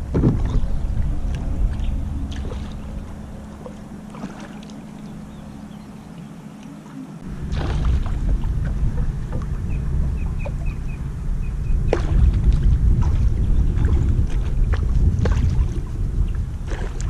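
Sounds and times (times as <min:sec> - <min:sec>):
water splashes and knocks: 0:00.0 - 0:02.8, 0:03.5 - 0:04.8, 0:07.2 - 0:10.8, 0:11.8 - 0:17.0
wind buffeting microphone: 0:00.0 - 0:17.0.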